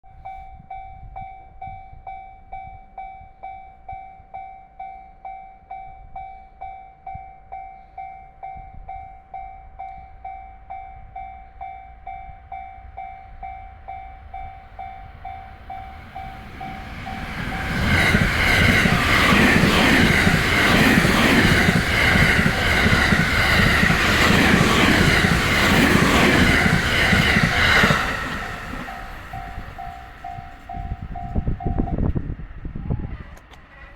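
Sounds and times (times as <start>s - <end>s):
level-crossing warning bell: 0.1s - 32.2s
train passing at high speed: 9.7s - 33.9s.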